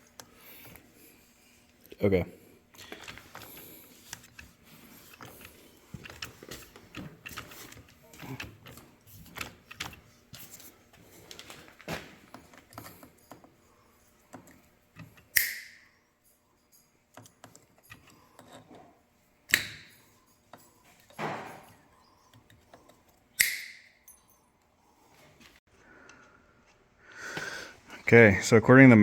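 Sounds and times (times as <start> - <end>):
metal tools clinking: 11.1 - 24.8.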